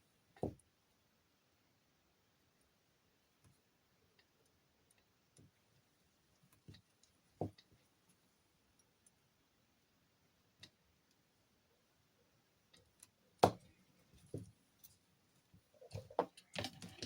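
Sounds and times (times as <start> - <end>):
small parts clicking and knocking: 15.7 - 17.0.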